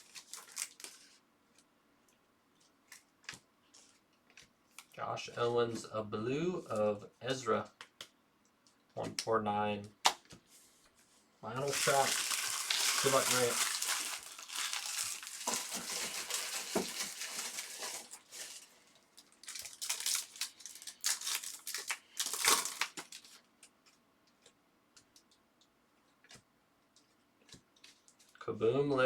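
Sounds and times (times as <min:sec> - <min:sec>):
wrapper tearing and crinkling: 0:00.0 - 0:01.2, 0:11.6 - 0:23.5.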